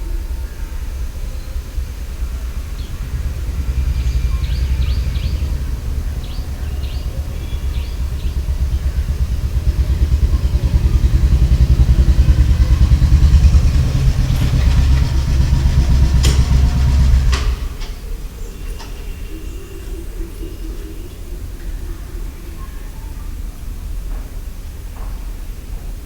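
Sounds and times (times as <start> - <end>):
small birds chirping: 0.9 - 23.1
motor vehicle engine passing: 1.4 - 18.4.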